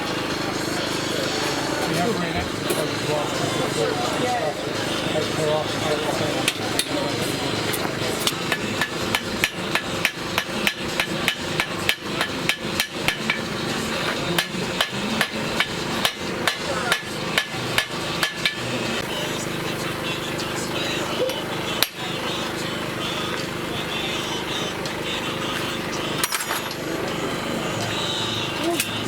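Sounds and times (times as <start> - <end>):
hammer striking: 7.7 - 18.7.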